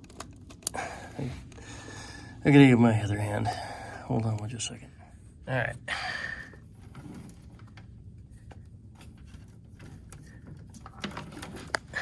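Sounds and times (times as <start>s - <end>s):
cables being handled: 0.0s - 1.7s, 6.5s - 12.0s
low room hum: 0.0s - 12.0s.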